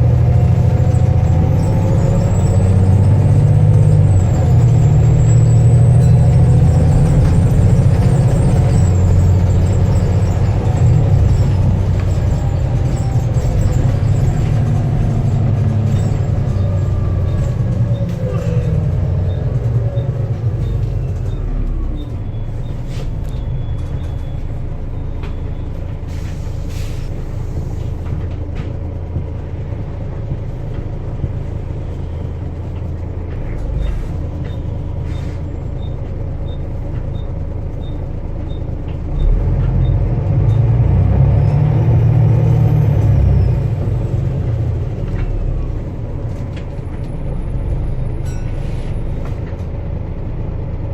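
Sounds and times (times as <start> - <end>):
bus diesel engine running: 0.0 - 50.9.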